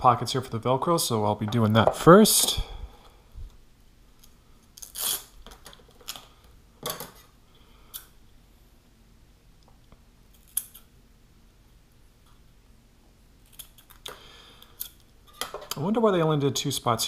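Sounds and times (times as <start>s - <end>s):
scissors cutting velcro: 4.8s - 5.4s.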